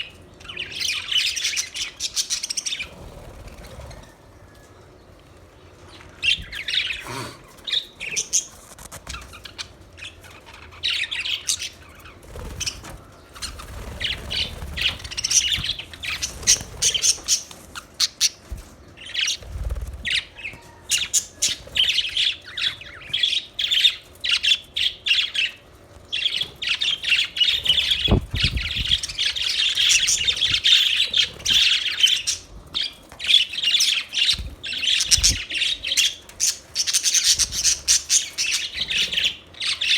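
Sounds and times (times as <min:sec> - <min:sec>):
budgerigars chirping and warbling: 0:00.0 - 0:04.2, 0:06.2 - 0:39.9
bird squawks: 0:26.3 - 0:39.9.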